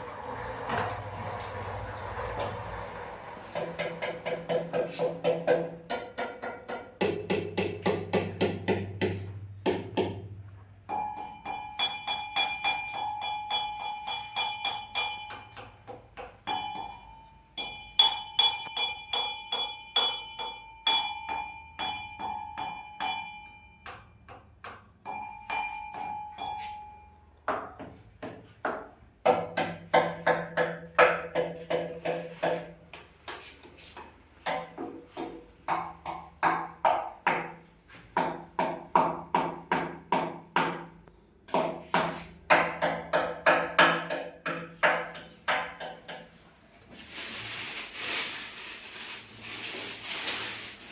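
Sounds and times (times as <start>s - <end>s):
rapid tapping on ringing objects: 10.8s - 27.8s.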